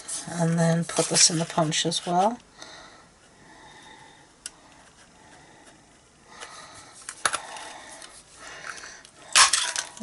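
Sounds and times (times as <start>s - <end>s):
cardstock rustling: 0.0s - 2.4s.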